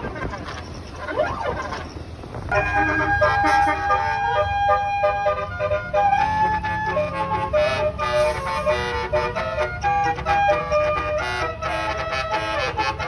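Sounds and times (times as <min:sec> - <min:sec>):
low engine rumble: 0:00.0 - 0:13.0
multi-note air horn melody: 0:02.5 - 0:13.0.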